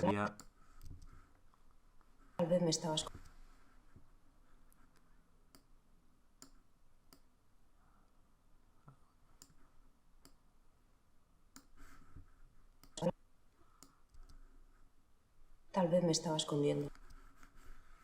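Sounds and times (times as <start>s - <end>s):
faint computer mouse clicks: 6.4s - 7.3s, 11.6s - 11.8s, 13.8s - 14.4s.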